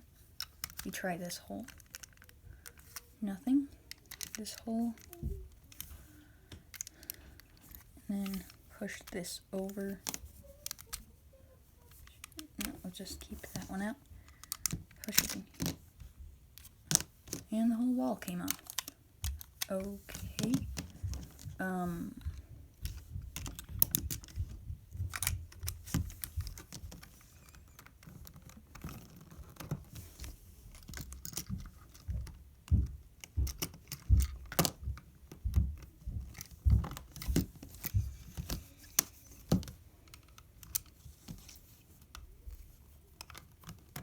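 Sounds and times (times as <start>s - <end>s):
plastic bricks clicking: 0.4s - 3.1s, 3.7s - 11.0s, 13.4s - 15.8s, 16.6s - 17.6s, 18.2s - 32.4s.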